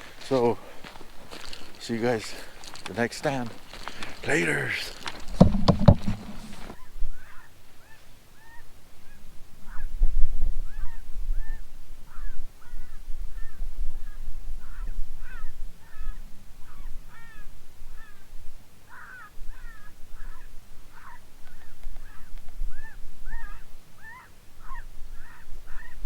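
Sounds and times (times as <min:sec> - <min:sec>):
flock of birds calling: 0:18.9 - 0:21.2.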